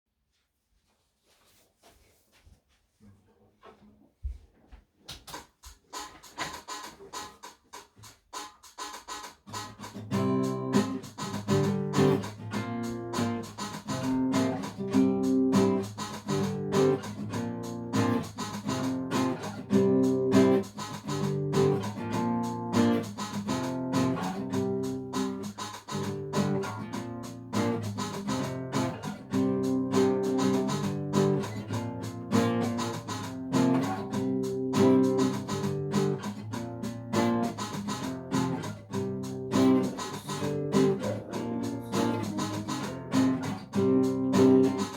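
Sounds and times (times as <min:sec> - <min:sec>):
guitar plucked and strummed: 0:09.5 - 0:44.9.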